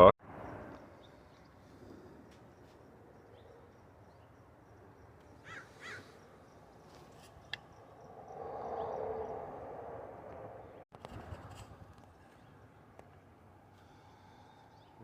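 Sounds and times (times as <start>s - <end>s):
crow-like caws: 5.4s - 6.2s.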